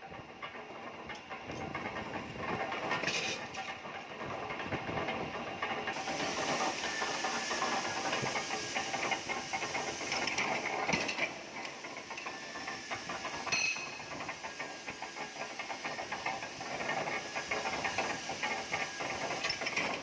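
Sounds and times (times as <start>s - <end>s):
cutting torch hissing and crackling: 5.6s - 20.0s
metallic ring: 13.5s - 14.0s.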